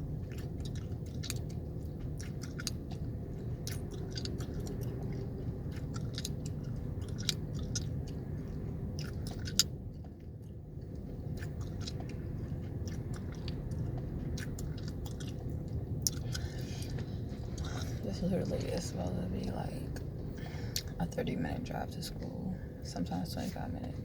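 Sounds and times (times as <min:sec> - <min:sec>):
gum chewing smacks: 0:00.0 - 0:18.0, 0:19.9 - 0:21.0
car rumble: 0:00.0 - 0:24.0.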